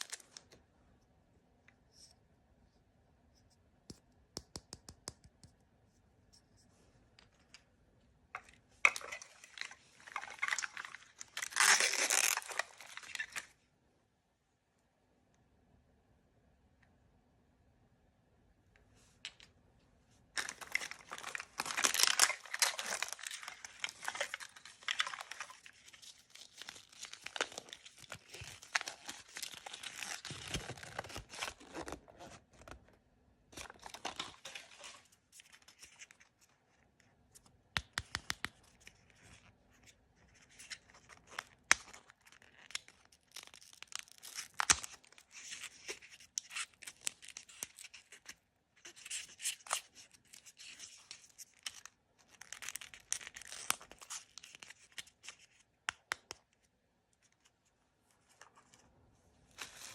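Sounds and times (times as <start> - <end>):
sharp little clicks and taps: 3.9 - 5.6
wrapper crinkling: 8.8 - 13.5, 20.4 - 32.0, 33.6 - 36.2
packaging ripping and rustling: 8.9 - 13.5, 20.4 - 32.7, 33.6 - 36.1, 41.0 - 48.1, 48.9 - 55.6, 59.5 - 59.9.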